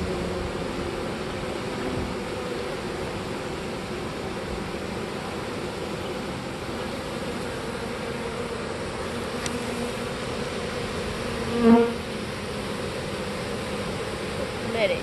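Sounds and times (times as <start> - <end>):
bee buzzing close by: 0.0 - 15.0
bee swarm buzzing: 0.0 - 15.0.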